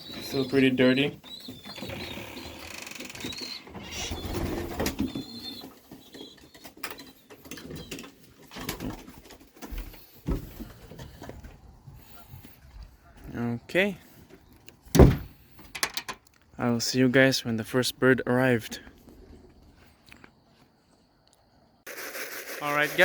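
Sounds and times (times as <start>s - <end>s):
pigeons cooing: 0.0s - 10.0s
knocks and scuffs of birds moving: 0.0s - 15.8s.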